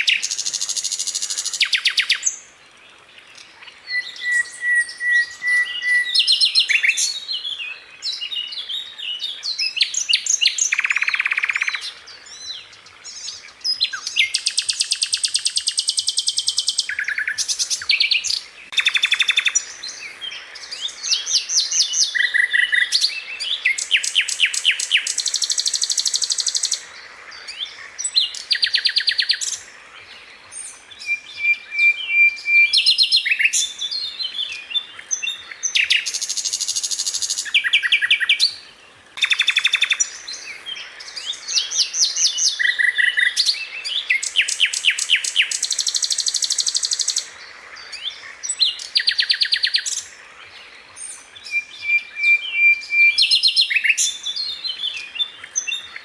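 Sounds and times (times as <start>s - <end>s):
bird singing trills: 0.0s - 2.5s, 3.2s - 29.7s, 30.4s - 56.0s.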